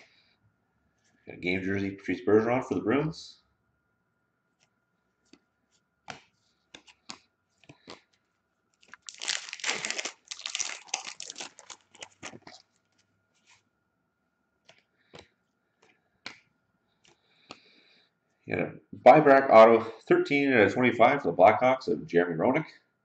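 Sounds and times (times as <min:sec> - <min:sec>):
wrapper being torn and crinkled: 0:08.8 - 0:12.8.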